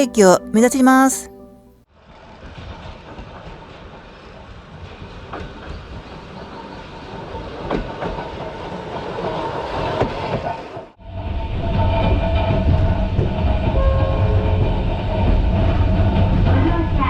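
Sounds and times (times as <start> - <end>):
higher tone: 0.0 - 1.8.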